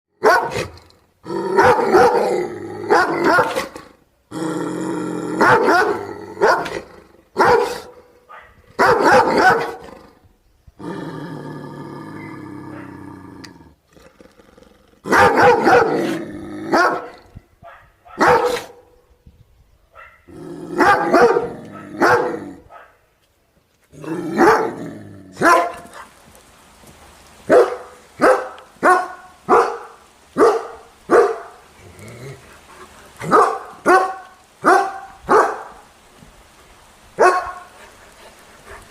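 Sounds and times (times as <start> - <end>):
dogs barking: 0.2 - 0.7, 1.6 - 2.3, 2.9 - 3.8, 5.4 - 9.8, 15.1 - 18.9, 19.9 - 23.0, 24.3 - 24.8, 25.4 - 26.1, 27.5 - 31.6, 33.2 - 35.8, 37.2 - 37.8
dog growling: 0.6 - 7.1, 10.8 - 17.4, 20.3 - 22.7, 23.9 - 25.5, 31.8 - 33.3.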